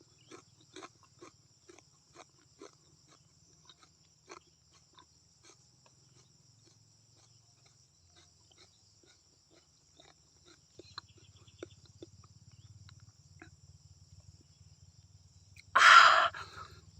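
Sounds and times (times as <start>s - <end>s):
wet chewing: 0.3s - 4.4s, 6.2s - 11.1s.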